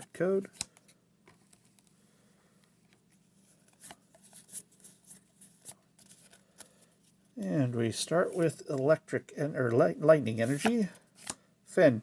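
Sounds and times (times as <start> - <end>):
trading cards rustling and clicking: 10.3 - 11.4.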